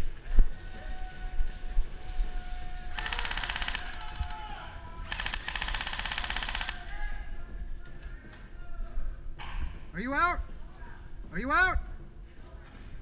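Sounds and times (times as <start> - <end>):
airsoft guns firing bursts: 2.7 - 7.2.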